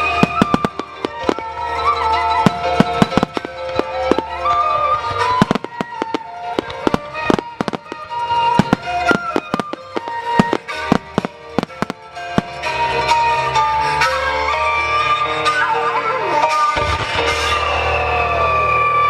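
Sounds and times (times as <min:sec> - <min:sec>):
fireworks bangs and cracks: 0:00.0 - 0:13.6
melodic music: 0:00.0 - 0:18.5.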